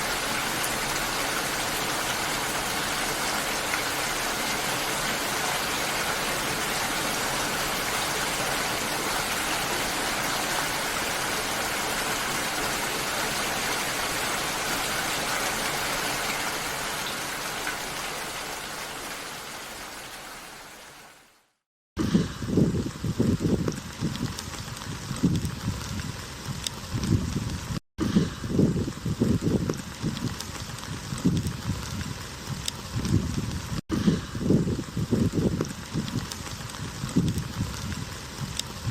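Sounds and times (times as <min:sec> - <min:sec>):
steady rain falling: 0:00.0 - 0:21.6, 0:34.7 - 0:38.9.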